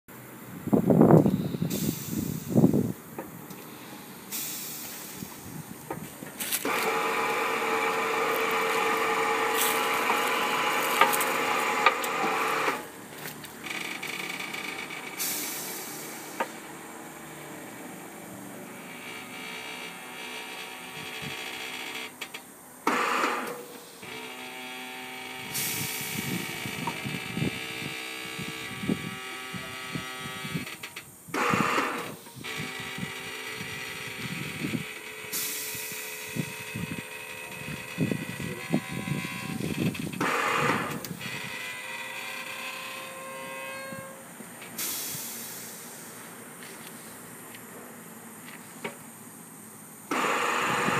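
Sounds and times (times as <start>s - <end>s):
short hissing bursts: 1.3s - 2.9s, 3.6s - 12.9s, 15.1s - 16.4s, 25.5s - 26.7s, 35.3s - 36.7s, 44.7s - 47.4s
machine motor whine: 3.5s - 45.8s, 49.9s - 50.9s.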